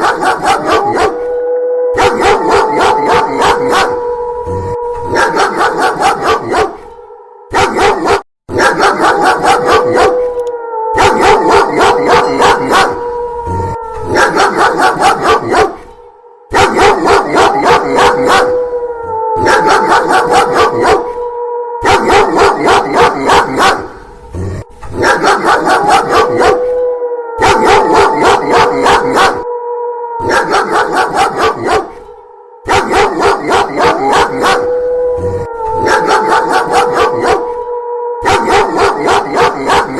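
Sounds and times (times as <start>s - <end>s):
dog barking rapidly: 0.0s - 1.2s, 2.0s - 3.9s, 5.1s - 6.8s, 7.6s - 10.1s, 11.0s - 13.0s, 14.1s - 15.8s, 16.5s - 18.5s, 19.4s - 21.1s, 21.9s - 23.9s, 25.0s - 26.6s, 27.4s - 29.4s, 30.2s - 32.0s, 32.7s - 34.6s, 35.8s - 37.5s, 38.3s - 39.9s
long wolf-like howl: 0.0s - 39.9s.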